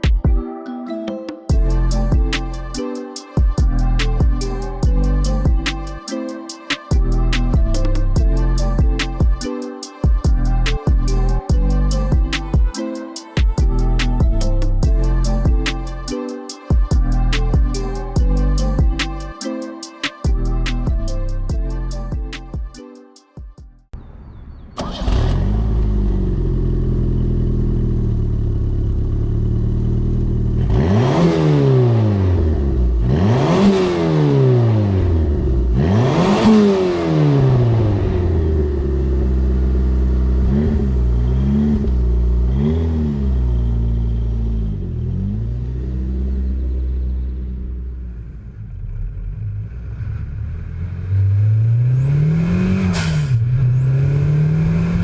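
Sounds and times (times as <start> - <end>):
car engine revving: 49.0 - 55.0.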